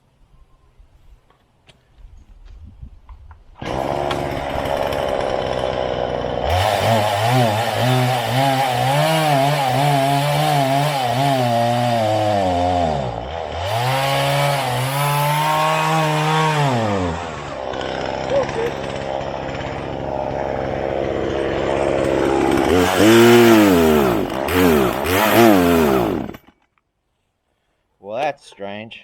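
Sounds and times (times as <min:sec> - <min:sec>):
chainsaw engine revving: 0:03.6 - 0:26.6.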